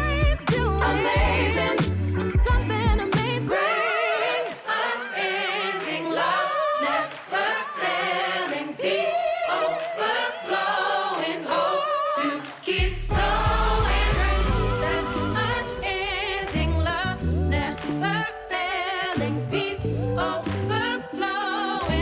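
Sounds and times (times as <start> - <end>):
deep bass line: 0.0 - 3.5, 12.8 - 18.2, 19.2 - 20.9
gospel choir singing: 0.0 - 22.0.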